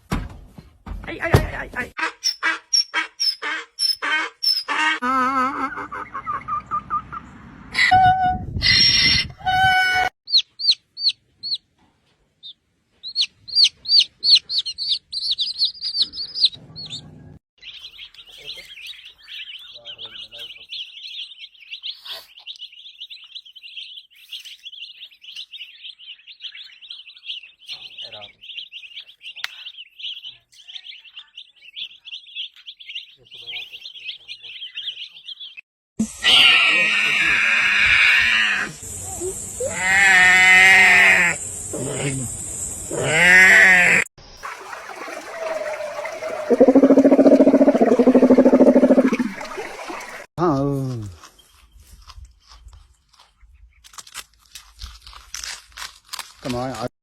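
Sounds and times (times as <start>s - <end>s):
quick repeated chirps: 2.2s - 4.7s
warbling tone: 45.2s - 50.3s
high upward sweeps: 45.8s - 49.5s
rapid high-pitched chirping trill: 46.4s - 49.2s.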